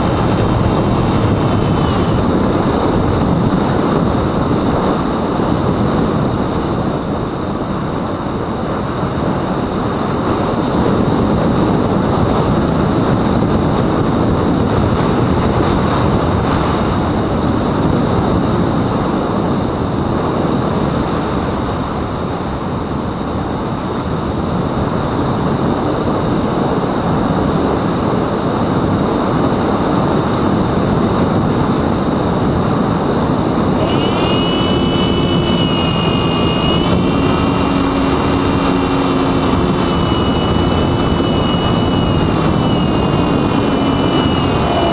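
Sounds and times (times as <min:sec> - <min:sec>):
faint high whine: 0:00.0 - 0:17.7, 0:32.5 - 0:44.9
wind buffeting microphone: 0:00.0 - 0:44.9.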